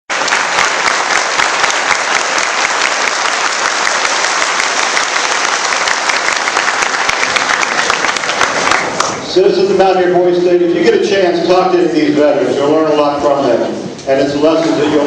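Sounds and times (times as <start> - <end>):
audience applauding: 0.1 - 9.2.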